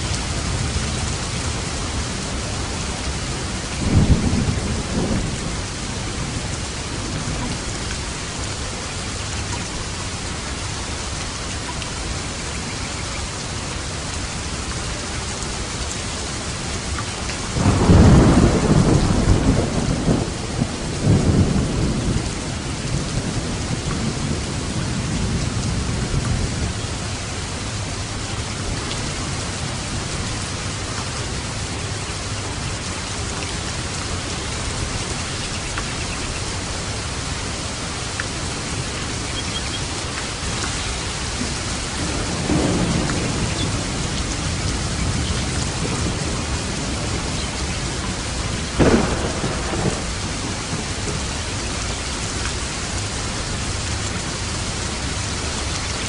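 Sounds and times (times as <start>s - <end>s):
thunder rumbling: 0.0s - 8.1s, 17.5s - 30.6s, 33.7s - 55.7s
heavy rain falling: 0.0s - 56.0s.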